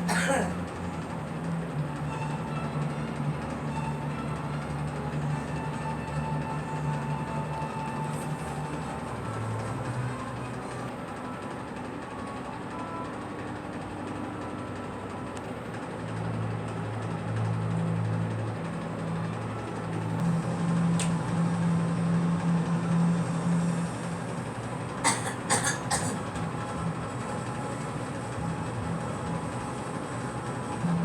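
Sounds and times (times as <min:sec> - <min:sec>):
girl coughing: 0:00.1 - 0:00.6, 0:25.0 - 0:26.3.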